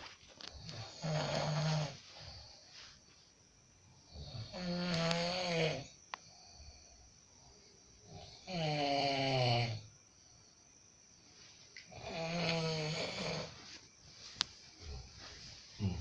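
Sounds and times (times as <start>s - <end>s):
person snoring: 0.6s - 2.5s, 4.1s - 6.7s, 8.1s - 9.8s, 11.9s - 13.6s, 15.8s - 16.0s.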